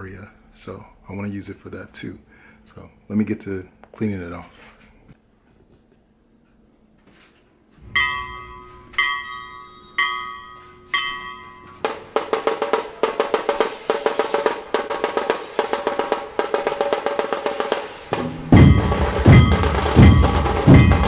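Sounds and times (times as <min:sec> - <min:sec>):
pitched chords: 0:07.8 - 0:13.6, 0:14.6 - 0:21.0
fast drum beat: 0:11.8 - 0:21.0.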